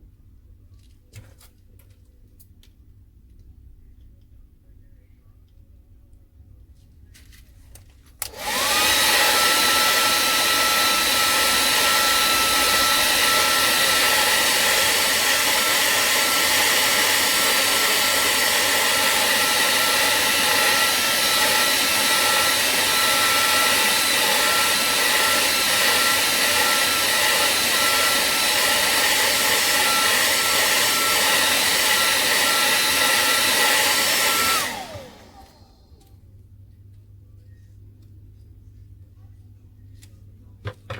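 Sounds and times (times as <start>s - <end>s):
hot-air blower running: 8.2s - 36.2s.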